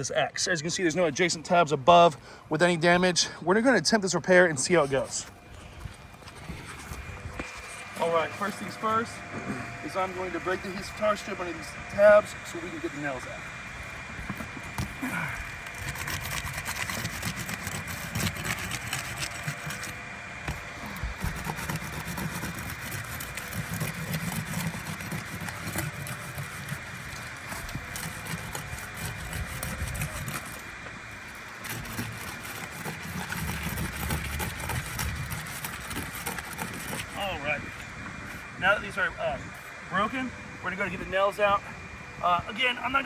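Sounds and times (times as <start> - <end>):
shingle tar strip crackling: 13.8 - 37.4.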